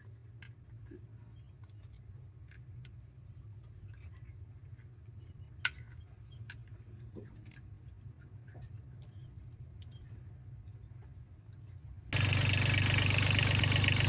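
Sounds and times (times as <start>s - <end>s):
low steady hum: 12.2s - 14.0s.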